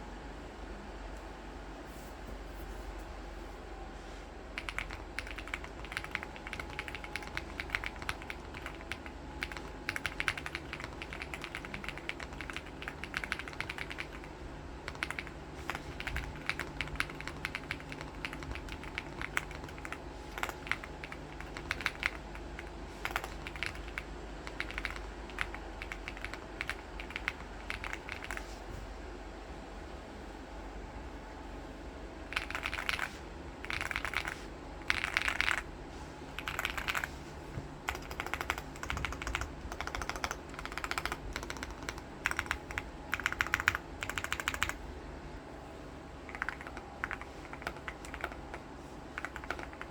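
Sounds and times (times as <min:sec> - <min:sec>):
mechanical keyboard typing: 0:04.6 - 0:28.5, 0:32.3 - 0:35.7, 0:36.4 - 0:37.2, 0:37.9 - 0:44.8, 0:46.3 - 0:48.6, 0:49.2 - 0:49.9.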